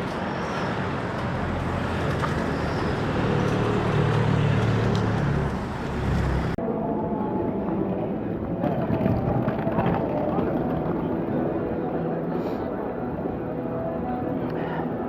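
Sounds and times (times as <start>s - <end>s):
vehicle engine rumble: 0.0s - 6.6s
street traffic noise: 0.0s - 15.0s.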